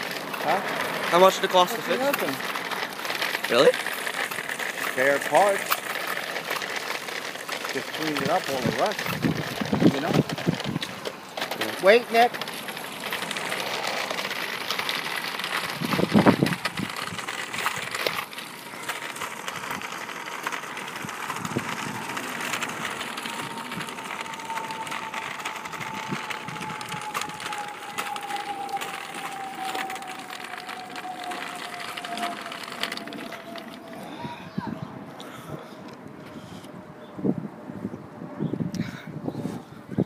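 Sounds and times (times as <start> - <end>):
electric dirt bike motor whine: 0.0 - 35.3
outdoor noise: 0.0 - 40.0.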